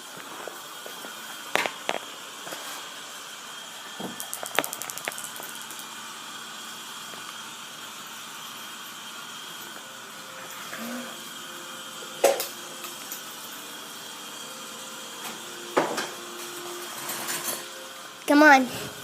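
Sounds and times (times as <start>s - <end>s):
rattle of fast ticks: 4.2s - 5.9s.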